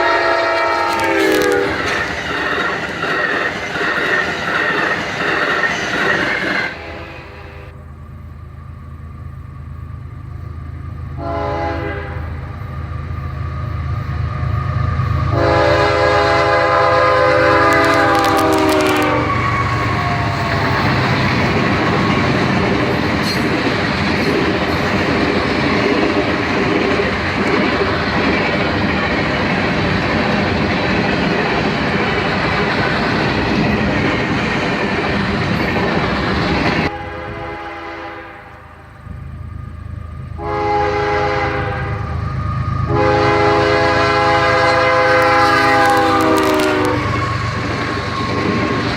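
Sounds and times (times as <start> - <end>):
train air horn: 0.0 - 1.9, 6.7 - 7.8, 11.2 - 12.5, 15.3 - 20.6, 36.9 - 38.9, 40.4 - 47.6
train cars rumbling on rails: 0.0 - 48.9.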